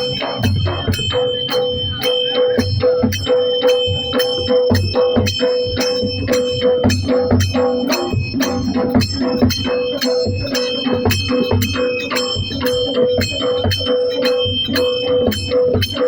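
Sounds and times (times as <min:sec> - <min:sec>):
drums beating quick rhythm: 0:00.0 - 0:16.0
held high melodic tone: 0:00.0 - 0:16.0
jingling metal strikes: 0:00.0 - 0:16.0.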